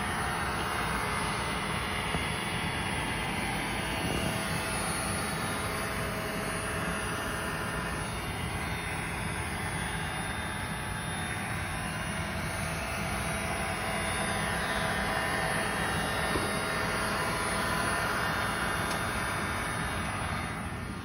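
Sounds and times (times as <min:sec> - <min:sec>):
robot vacuum whirring: 0:00.0 - 0:21.0.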